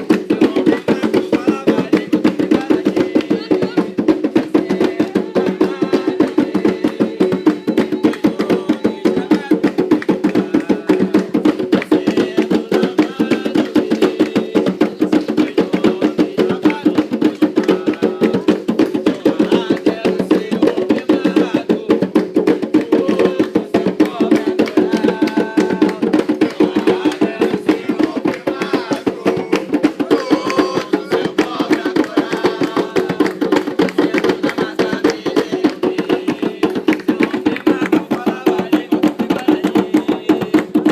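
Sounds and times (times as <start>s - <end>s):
fast hand drumming: 0.0s - 40.9s
voices faintly singing: 0.0s - 40.9s.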